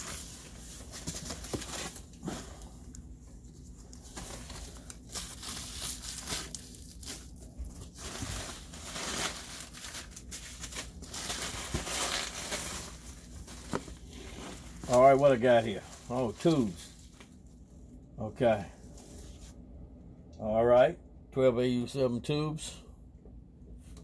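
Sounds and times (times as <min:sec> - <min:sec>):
packing material crinkling and tearing: 0:00.0 - 0:02.7, 0:03.4 - 0:17.4.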